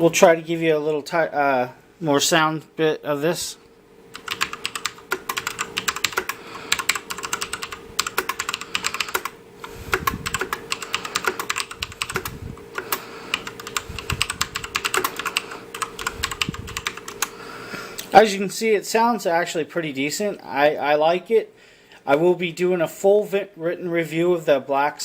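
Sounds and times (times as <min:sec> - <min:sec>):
mechanical keyboard typing: 0:04.1 - 0:17.3.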